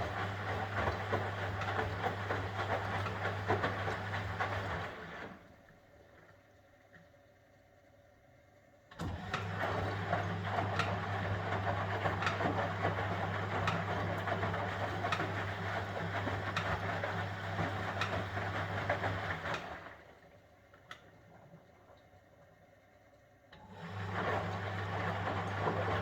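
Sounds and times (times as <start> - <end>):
washing tumbling in drum: 0.0 - 5.3, 9.4 - 20.1
washing machine motor hum: 0.0 - 5.5, 9.0 - 20.2, 23.6 - 26.0.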